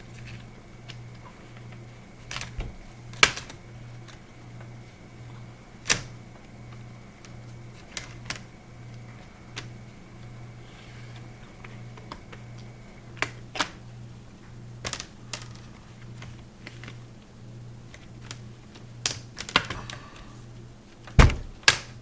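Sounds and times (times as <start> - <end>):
steady low hum: 0.0 - 22.0
plastic clips snapping: 2.3 - 4.2, 5.8 - 6.1, 7.2 - 8.5, 12.0 - 13.8, 14.8 - 17.0, 19.0 - 19.9, 21.0 - 22.0
heavy knock: 21.2 - 21.6.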